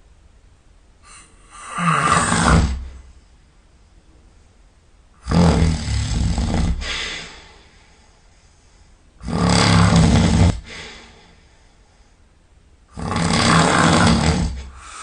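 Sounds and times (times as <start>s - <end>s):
person snoring loudly: 1.1s - 3.0s, 5.2s - 7.3s, 9.2s - 10.9s, 12.9s - 15.0s.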